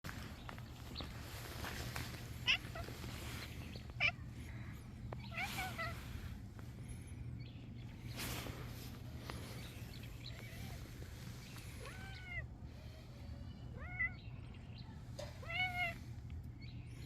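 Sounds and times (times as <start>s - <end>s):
steady low hum: 0.1s - 17.0s
cat meowing: 11.8s - 12.5s, 13.7s - 14.2s, 15.3s - 16.0s.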